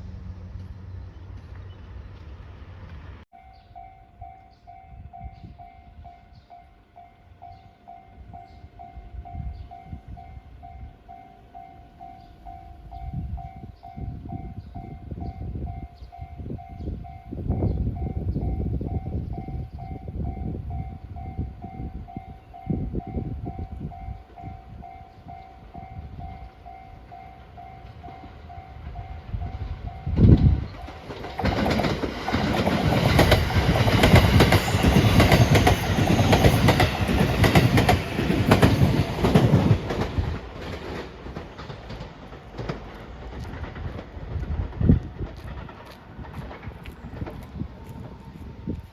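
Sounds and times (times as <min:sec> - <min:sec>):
level-crossing warning bell ringing: 0:03.3 - 0:31.4
train wheels clattering over rails: 0:27.1 - 0:48.2.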